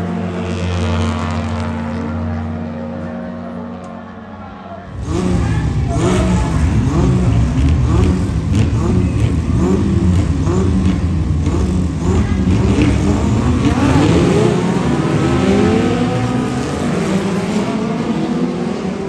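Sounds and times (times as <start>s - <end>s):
car engine revving: 4.9s - 19.0s.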